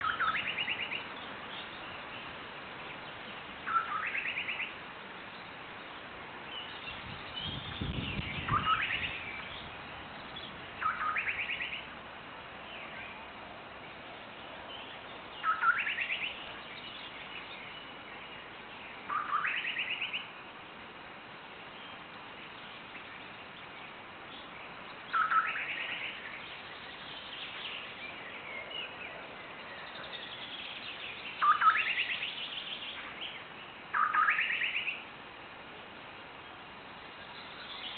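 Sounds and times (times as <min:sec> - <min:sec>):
bird trilled call rising in pitch: 0:00.0 - 0:01.0, 0:03.7 - 0:04.7, 0:07.6 - 0:09.5, 0:10.8 - 0:11.9, 0:15.4 - 0:16.4, 0:19.1 - 0:20.3, 0:25.1 - 0:26.2, 0:31.4 - 0:32.5, 0:33.9 - 0:35.0
faint calls of other birds: 0:00.0 - 0:12.0, 0:12.6 - 0:20.4, 0:21.6 - 0:35.1.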